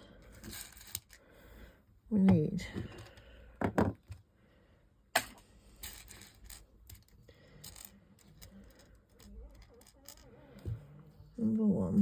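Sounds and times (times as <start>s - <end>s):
plastic blocks clicking and rattling: 0.2s - 1.2s, 5.8s - 10.8s.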